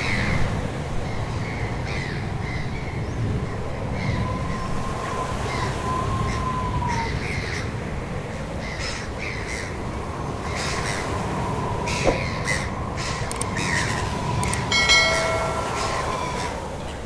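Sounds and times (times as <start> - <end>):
crows cawing: 8.6 - 11.3, 11.9 - 14.1.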